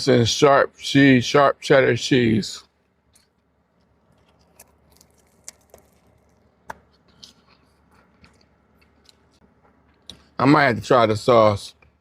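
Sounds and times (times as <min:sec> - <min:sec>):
faint chewing mouth clicks: 0:03.1 - 0:10.2.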